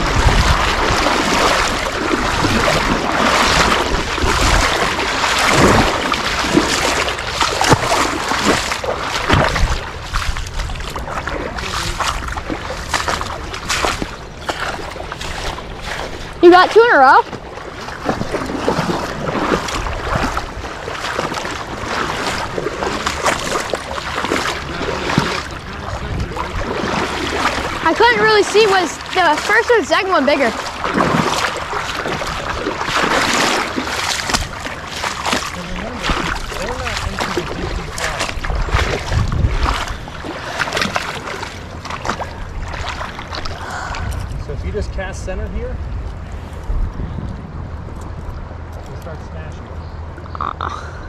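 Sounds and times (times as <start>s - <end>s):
river water rushing and splashing: 0.0s - 44.8s.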